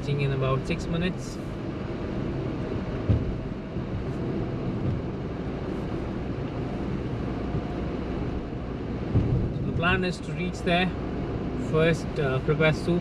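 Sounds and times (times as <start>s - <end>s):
car cabin road and engine rumble: 0.0s - 13.0s
brief thump: 3.0s - 3.4s.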